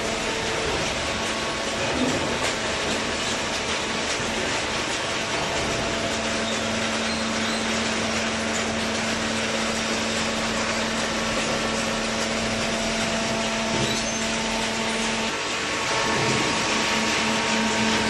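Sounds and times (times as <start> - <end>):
baler machine humming: 0.0 - 18.0.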